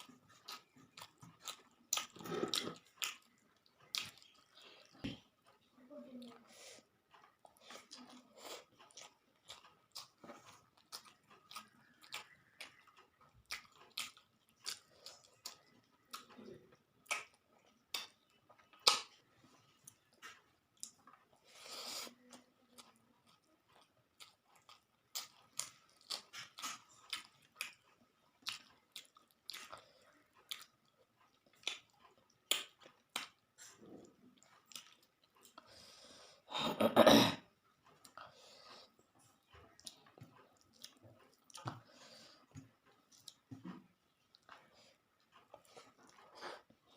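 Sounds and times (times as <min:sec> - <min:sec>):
chewing crisp food: 0:00.0 - 0:36.6, 0:37.4 - 0:46.9
mouth clicks and smacks: 0:17.0 - 0:19.2.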